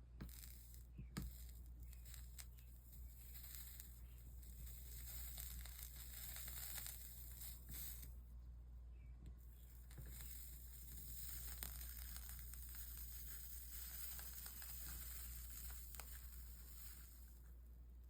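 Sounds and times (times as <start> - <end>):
soldering iron sizzling and crackling: 0.0 - 8.2, 9.4 - 17.8.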